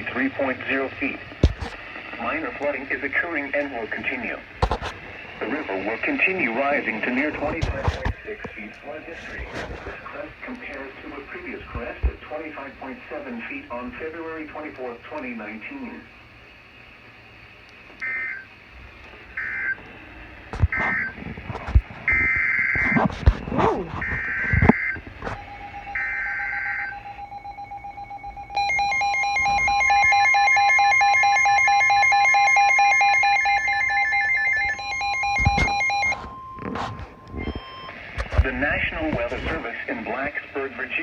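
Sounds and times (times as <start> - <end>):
steady two-tone alert tone: 24.0 - 38.0
shrill digital data bursts: 24.2 - 36.2.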